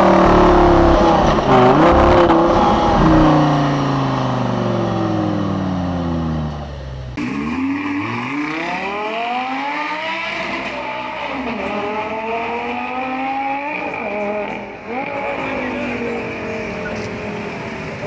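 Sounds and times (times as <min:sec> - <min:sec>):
sports car engine revving: 0:00.0 - 0:06.5.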